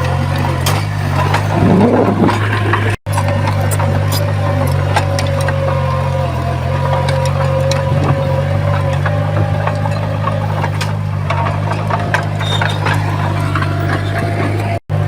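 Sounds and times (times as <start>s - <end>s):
metallic clanks and rattles: 0.0s - 14.8s
heavy diesel machinery running: 0.0s - 15.0s
machinery whine: 0.0s - 15.0s.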